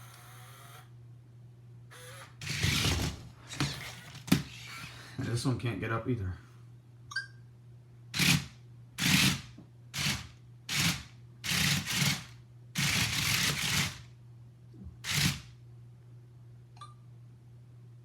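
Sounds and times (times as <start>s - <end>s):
robot motors whirring: 1.9s - 4.9s, 15.0s - 15.4s.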